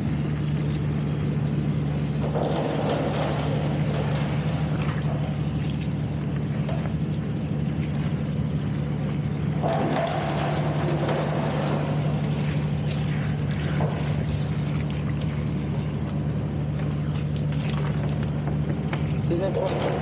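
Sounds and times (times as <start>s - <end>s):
stationary engine humming: 0.0s - 20.0s
rough clattering noise: 2.2s - 5.3s, 9.6s - 12.6s.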